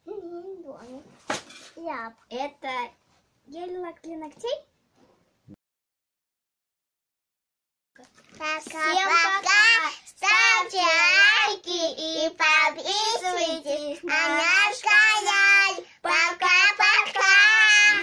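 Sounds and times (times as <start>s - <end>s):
girl singing: 8.4s - 18.0s.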